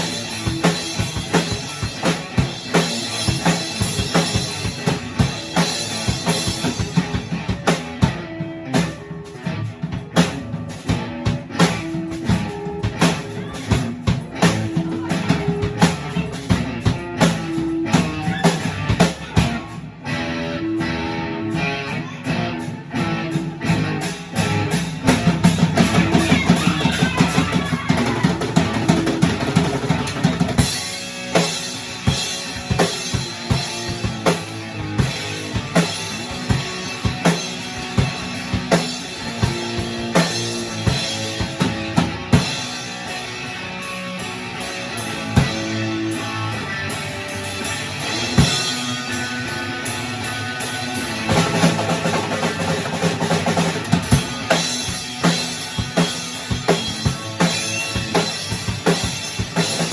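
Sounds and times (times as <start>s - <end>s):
drum kit: 0.0s - 59.9s
guitar playing chords: 0.0s - 59.9s.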